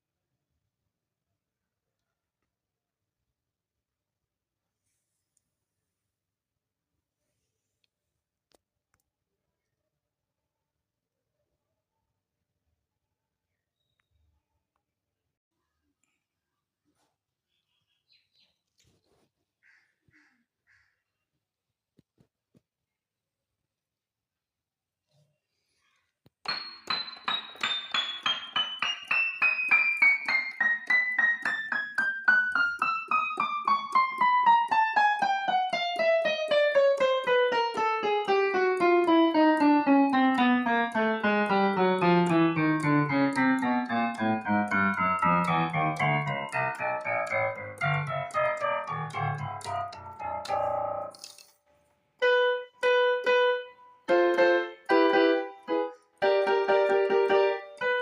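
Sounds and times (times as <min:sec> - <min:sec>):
digital piano notes: 0:26.5 - 0:51.6, 0:52.2 - 0:58.0.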